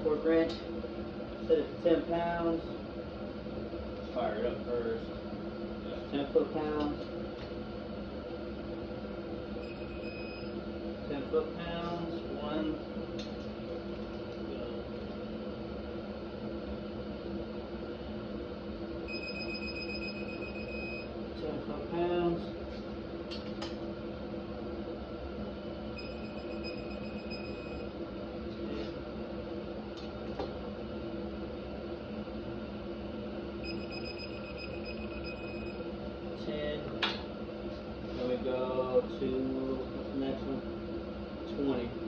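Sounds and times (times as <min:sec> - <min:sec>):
background hum: 0:00.0 - 0:42.0
torque wrench high beep: 0:09.6 - 0:10.5, 0:19.1 - 0:21.1, 0:26.0 - 0:27.8, 0:33.6 - 0:35.8.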